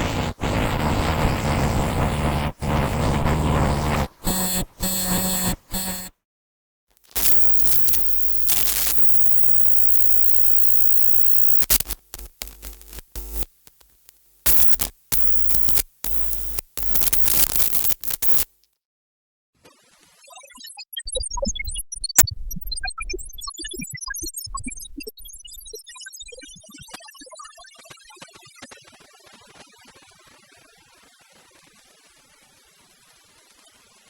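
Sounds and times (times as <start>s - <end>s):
crackling static: 0.0s - 6.1s, 7.0s - 18.6s
glitchy burst: 0.0s - 6.1s, 7.2s - 13.5s, 14.5s - 18.5s.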